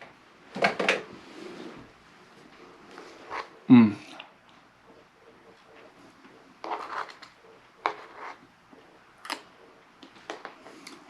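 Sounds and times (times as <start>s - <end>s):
spoon scraping ice cream: 6.6s - 8.4s.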